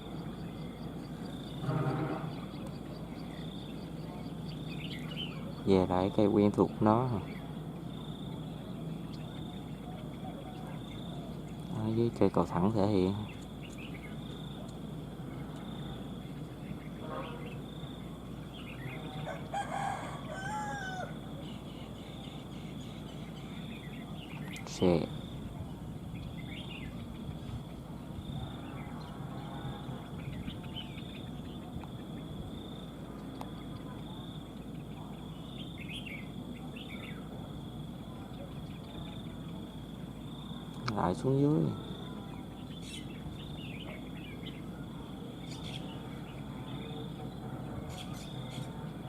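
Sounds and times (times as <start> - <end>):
bird chirping calls: 0.0 - 49.0
high insect drone: 0.0 - 49.0
rooster crowing: 18.9 - 21.4, 28.4 - 30.1.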